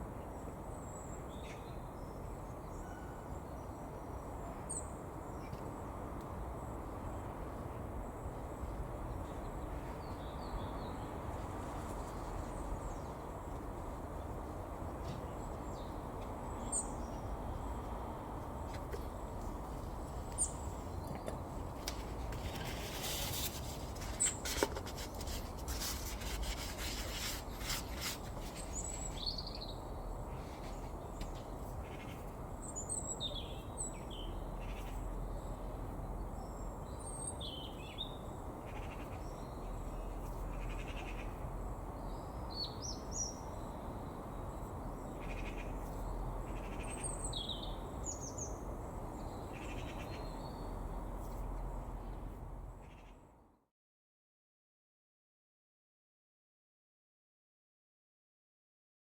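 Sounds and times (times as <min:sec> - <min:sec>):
small birds chirping: 0:15.2 - 0:53.2.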